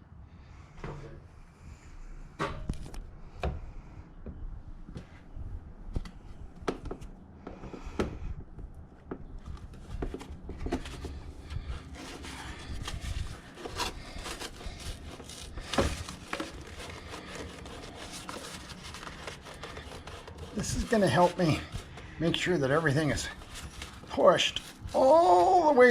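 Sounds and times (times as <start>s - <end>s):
rubbing and rustling: 9.4s - 25.9s.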